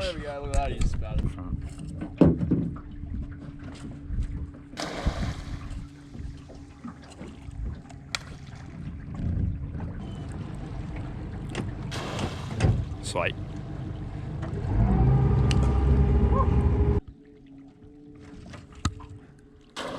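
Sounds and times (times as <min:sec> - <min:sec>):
wind on microphone: 0:00.0 - 0:06.5, 0:08.4 - 0:10.0
outboard motor running: 0:00.4 - 0:17.1.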